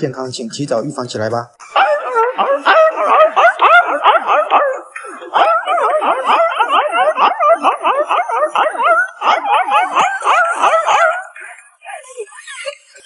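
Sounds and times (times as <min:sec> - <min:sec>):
dog yipping and howling: 0:01.7 - 0:11.4.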